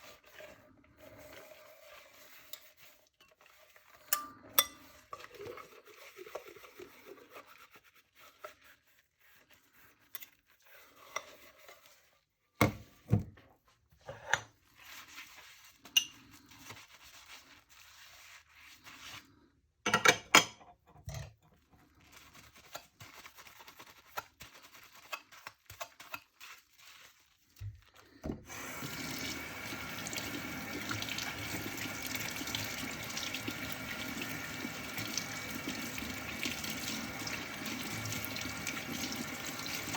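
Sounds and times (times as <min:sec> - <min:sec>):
faucet water running into sink: 0:28.4 - 0:39.9.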